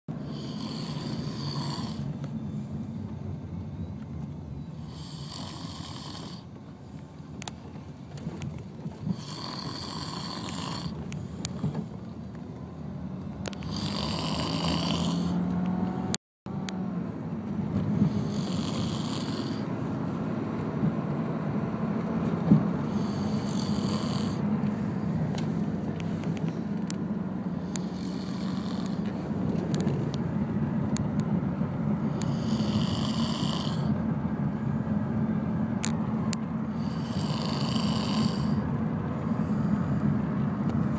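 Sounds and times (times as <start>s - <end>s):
low rattling snore: 0.2s - 2.2s, 4.8s - 6.5s, 9.0s - 11.7s, 13.4s - 15.8s, 18.0s - 19.7s, 22.8s - 25.1s, 27.5s - 30.2s, 32.1s - 34.0s, 36.7s - 40.0s.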